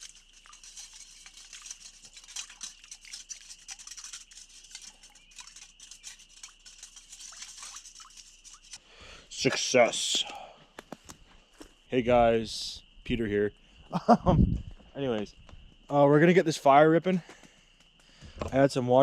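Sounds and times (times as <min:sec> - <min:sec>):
dishes being scrubbed: 0:00.0 - 0:08.8.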